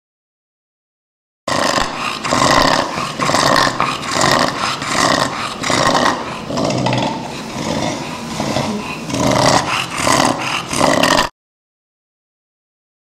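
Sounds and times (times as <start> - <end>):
dog snoring breathing: 1.5 - 11.3.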